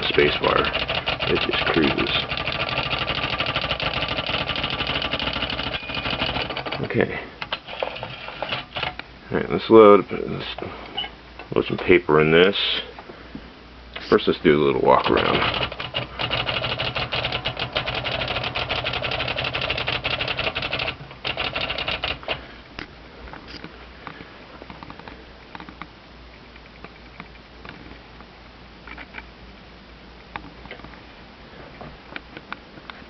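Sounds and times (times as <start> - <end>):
typewriter clicking: 0.0 - 9.0, 15.0 - 22.4.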